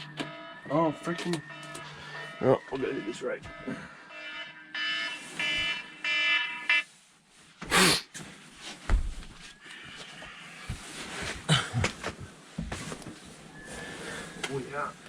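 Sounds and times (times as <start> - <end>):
electronic bite alarm beeping: 0.0 - 6.8
knocks and thumps: 8.9 - 9.3.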